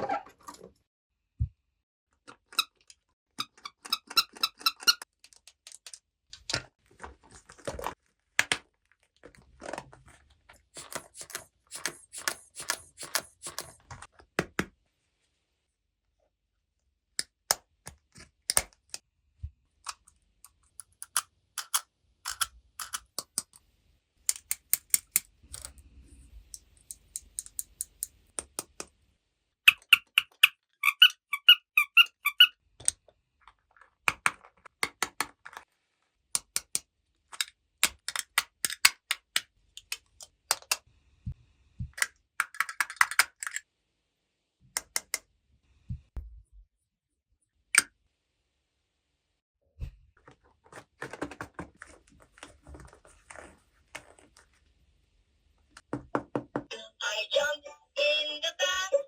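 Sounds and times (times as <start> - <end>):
plastic toy pieces clicking: 20.7 - 23.6, 36.4 - 40.8, 42.0 - 43.6.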